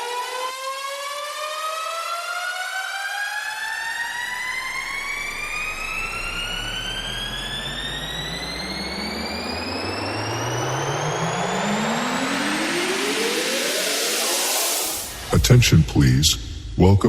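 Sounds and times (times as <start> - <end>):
rising synthetic test tone: 4.2 - 15.4
low bass tones: 15.3 - 17.0.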